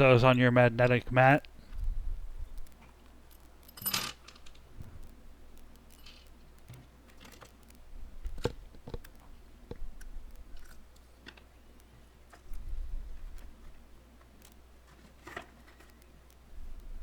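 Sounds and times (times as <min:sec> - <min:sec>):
small screws clicking and tapping: 0:02.5 - 0:17.0.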